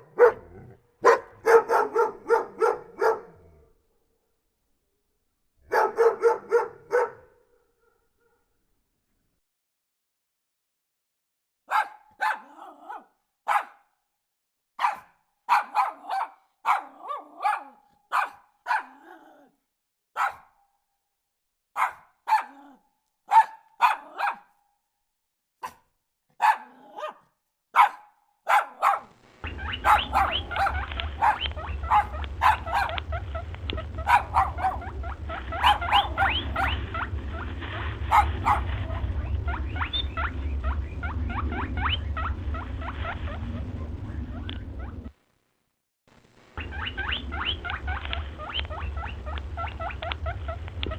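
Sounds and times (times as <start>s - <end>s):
dog barking: 0.0s - 3.7s, 5.6s - 8.6s, 11.7s - 14.0s, 14.8s - 19.5s, 20.1s - 20.7s, 21.7s - 24.6s, 25.6s - 33.1s, 33.8s - 36.8s, 38.1s - 39.0s
steady low hum: 29.2s - 50.9s.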